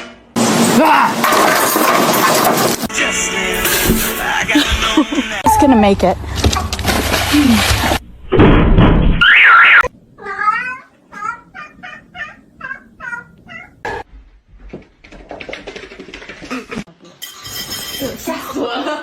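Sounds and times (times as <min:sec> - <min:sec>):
cat meowing: 0:10.2 - 0:13.9.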